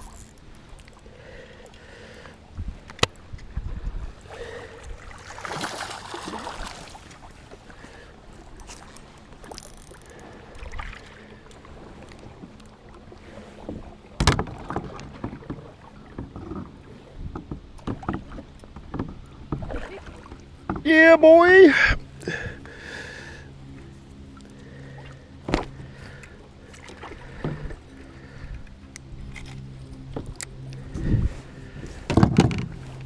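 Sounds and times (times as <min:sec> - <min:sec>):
water splashing: 0:04.1 - 0:16.3
knocks on kayak hull: 0:32.1 - 0:32.7.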